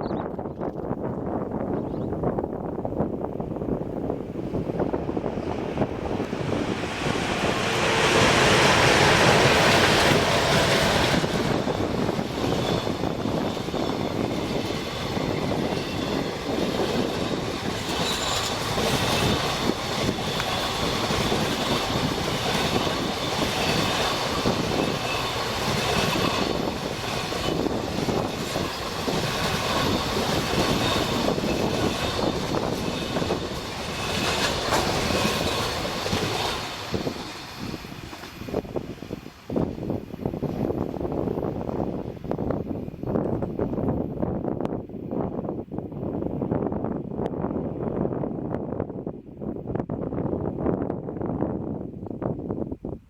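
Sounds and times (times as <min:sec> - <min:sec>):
train wheels clattering on rails: 0:04.4 - 0:41.6.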